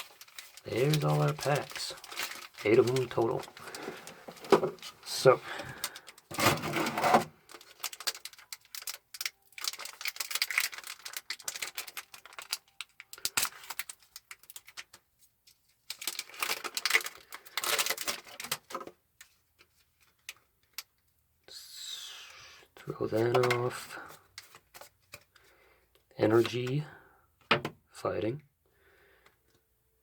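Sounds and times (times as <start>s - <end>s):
foil wrapper crinkling: 0.0s - 15.0s, 15.8s - 18.8s.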